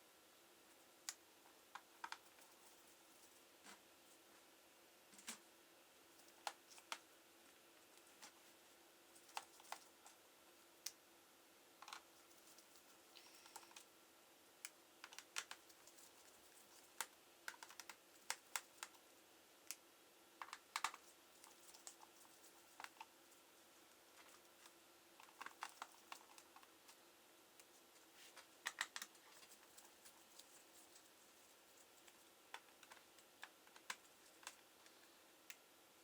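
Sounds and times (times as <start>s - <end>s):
faint hum: 0.0s - 36.0s
laptop clicks and taps: 17.0s - 18.9s, 20.4s - 21.0s.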